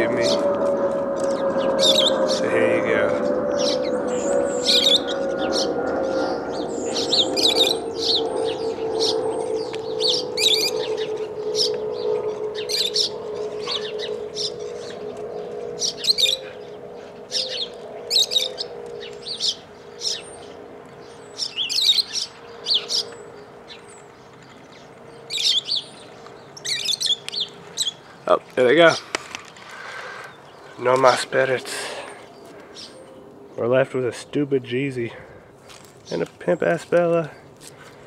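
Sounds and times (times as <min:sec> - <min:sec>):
steady hum: 0:00.0 - 0:25.3
parrots shrill calls: 0:01.2 - 0:02.4, 0:03.2 - 0:11.8, 0:12.4 - 0:15.0, 0:15.8 - 0:16.7, 0:17.3 - 0:20.5, 0:21.1 - 0:23.8, 0:25.3 - 0:26.0, 0:26.6 - 0:28.1.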